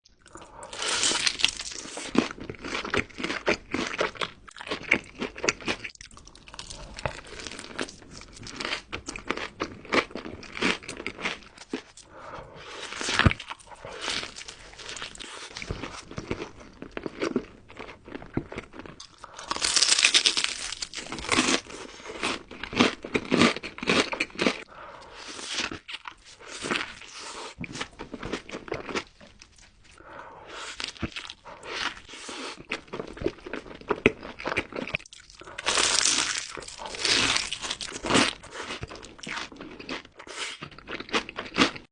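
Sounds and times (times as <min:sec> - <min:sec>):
crisp crunches of chewing: 0:12.7 - 0:24.7, 0:30.6 - 0:41.9.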